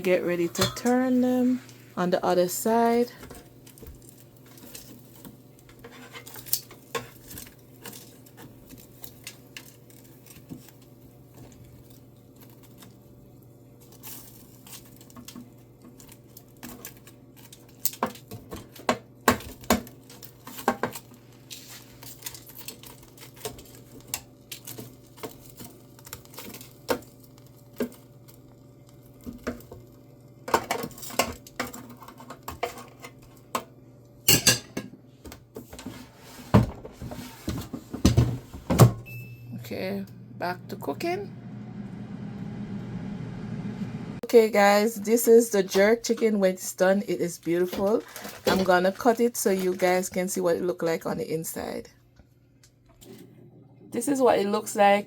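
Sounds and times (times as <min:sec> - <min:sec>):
utensils clinking on metal basket: 0:00.4 - 0:01.5.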